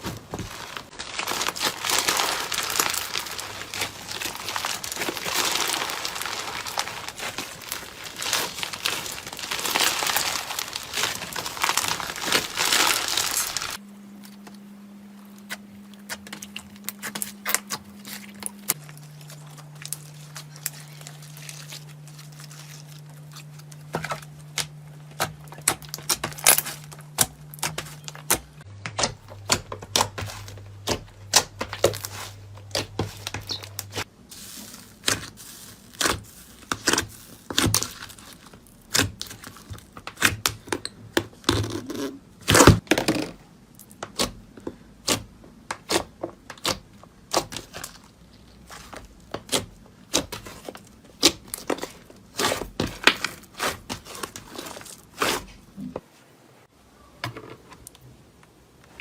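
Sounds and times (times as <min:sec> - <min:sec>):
faint low hum: 0:00.0 - 0:42.4.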